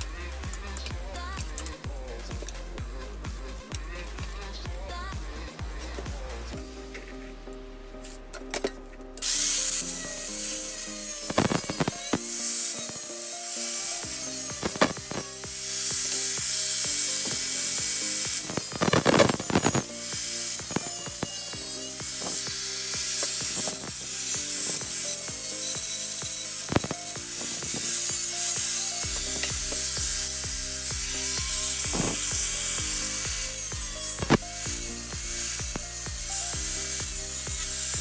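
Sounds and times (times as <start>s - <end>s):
background music: 0.0s - 38.0s
tool clicking and rasping: 8.4s - 38.0s.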